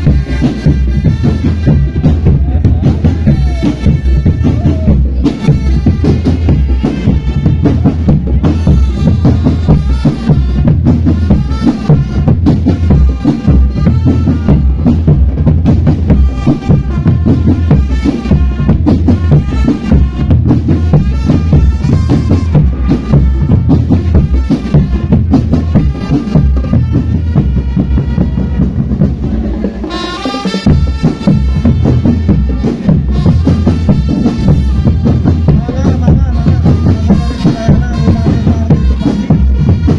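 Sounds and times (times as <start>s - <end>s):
bass drum beat: 0.0s - 39.9s
drum band music: 0.0s - 39.9s.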